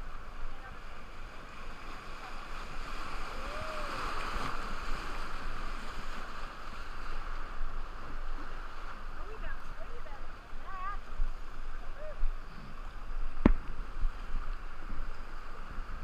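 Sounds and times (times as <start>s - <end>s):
river whitewater rushing: 0.1s - 6.4s.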